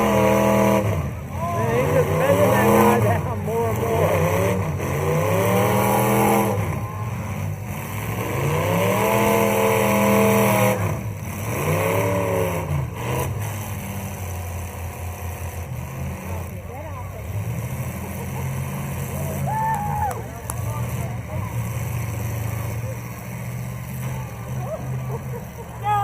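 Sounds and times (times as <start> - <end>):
car engine revving hard: 0.0 - 19.7.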